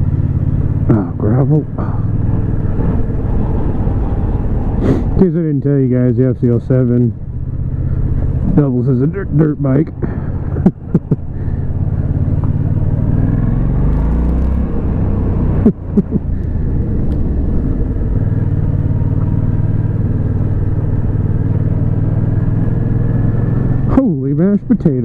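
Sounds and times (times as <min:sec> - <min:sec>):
motorcycle engine running: 0:00.0 - 0:25.0.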